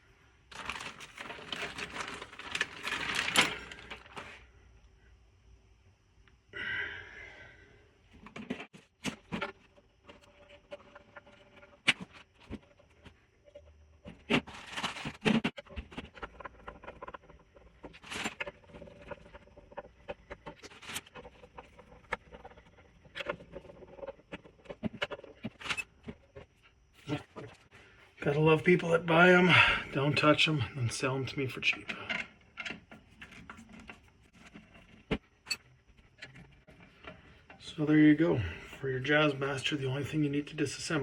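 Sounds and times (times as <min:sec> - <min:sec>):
scraping rustle: 0:00.5 - 0:04.4, 0:14.0 - 0:28.0, 0:31.8 - 0:37.5.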